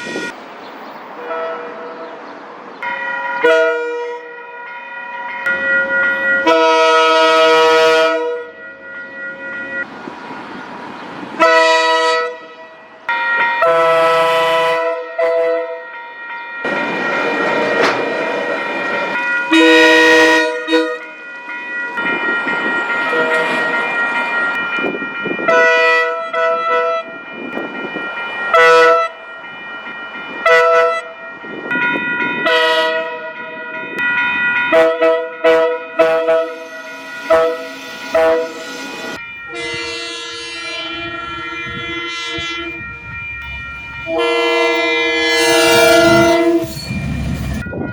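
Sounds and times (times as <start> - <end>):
train horn blasts: 0.0 - 0.4, 1.2 - 2.2, 3.4 - 4.4, 6.4 - 8.5, 11.4 - 12.8, 13.6 - 15.9, 19.5 - 21.2, 23.1 - 23.8, 25.5 - 27.1, 28.5 - 29.2, 30.4 - 31.1, 32.4 - 33.5, 34.7 - 42.9, 44.0 - 46.9
passing train rushing: 0.0 - 47.9.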